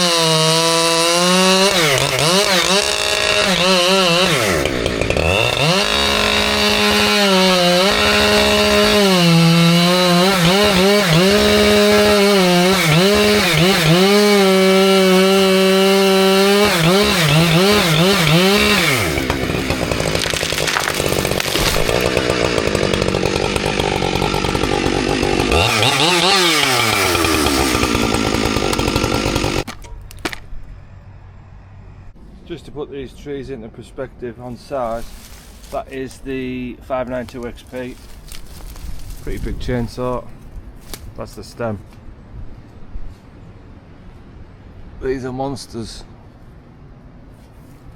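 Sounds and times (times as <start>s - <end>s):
chainsaw cutting wood: 0.0s - 30.6s.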